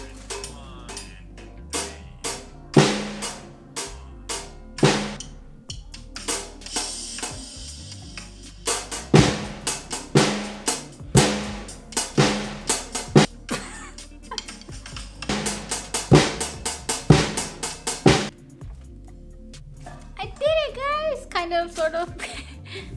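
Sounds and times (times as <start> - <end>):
snare drum: 0.0 - 1.1, 1.8 - 5.3, 6.2 - 7.6, 8.6 - 13.4, 15.3 - 18.3
hi-hat strokes: 0.0 - 13.5, 14.1 - 19.8
bass drum: 1.7 - 7.5, 8.6 - 13.4, 15.3 - 18.8.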